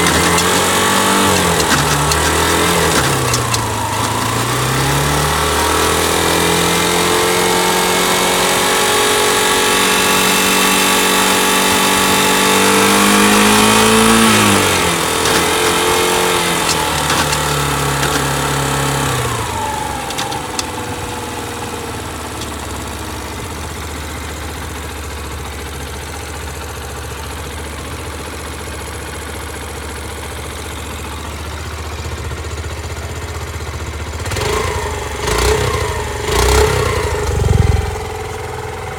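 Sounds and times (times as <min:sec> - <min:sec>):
engine ticking noise: 0:00.0 - 0:04.6, 0:13.6 - 0:23.6
motorcycle engine revving and idling: 0:00.0 - 0:38.9.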